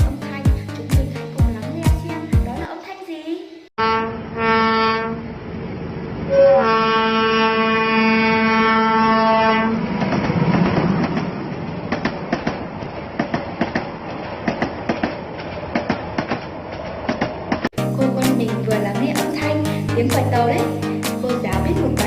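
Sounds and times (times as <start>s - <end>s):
train horn: 3.8s - 5.4s, 6.3s - 9.9s
rumble of moving train: 4.8s - 17.7s
wheels clacking over rail joints: 9.8s - 17.7s.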